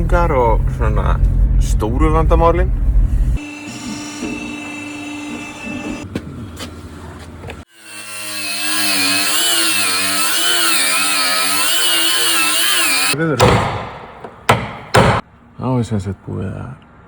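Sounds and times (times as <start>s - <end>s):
power tool running: 3.4s - 6.0s, 7.7s - 13.2s
knocks: 13.4s - 15.2s.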